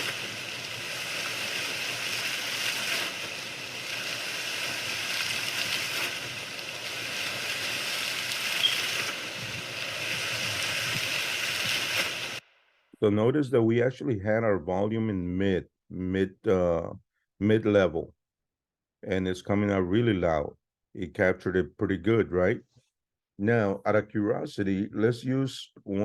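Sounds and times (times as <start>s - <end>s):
running water stream: 0.0s - 12.4s.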